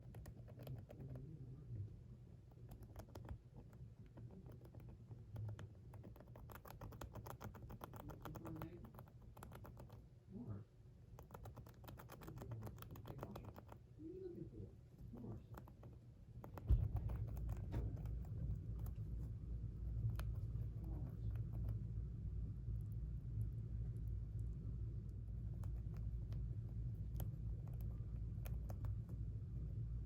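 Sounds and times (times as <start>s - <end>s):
hamster gnawing: 0.0s - 30.0s.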